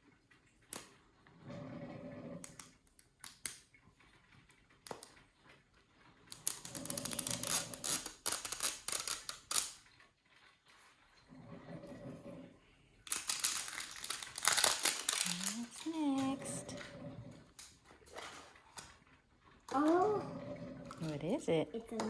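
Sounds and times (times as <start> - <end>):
plastic packaging clicks: 6.3 - 9.8, 13.1 - 16.2
plastic wrap crinkling: 6.4 - 9.7, 13.0 - 16.8.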